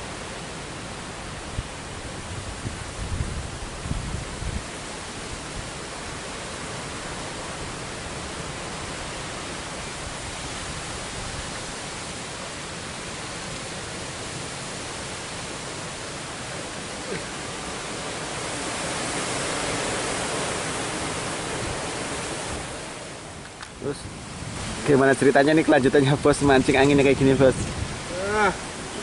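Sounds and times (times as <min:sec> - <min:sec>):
strong wind on microphone: 0:01.4 - 0:06.3, 0:18.0 - 0:29.0.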